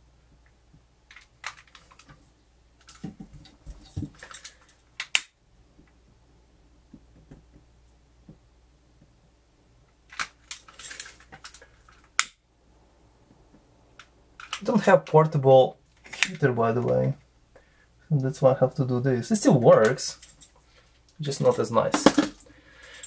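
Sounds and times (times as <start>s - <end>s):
handling noises and small clicks: 0.4s - 6.0s, 9.8s - 12.4s, 13.2s - 14.8s, 15.8s - 17.2s.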